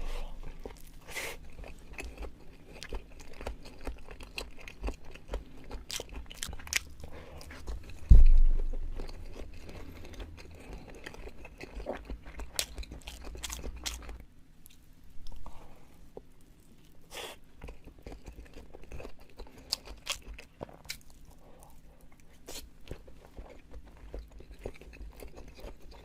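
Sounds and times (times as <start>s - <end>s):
person chewing: 0.0s - 26.0s
heavy deep thump: 8.0s - 8.9s.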